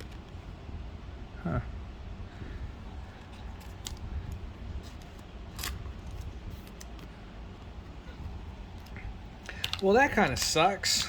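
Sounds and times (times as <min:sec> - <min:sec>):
steady low hum: 0:00.0 - 0:11.0
cards clicking: 0:03.2 - 0:07.7, 0:08.7 - 0:11.0.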